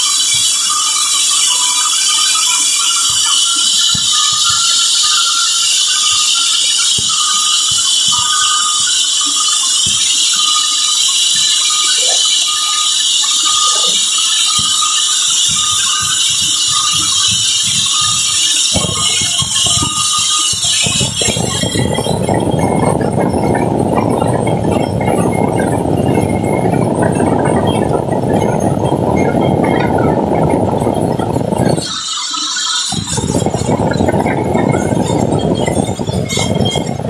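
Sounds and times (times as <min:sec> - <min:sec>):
heavy rumble: 0:15.5 - 0:32.0, 0:32.8 - 0:37.0.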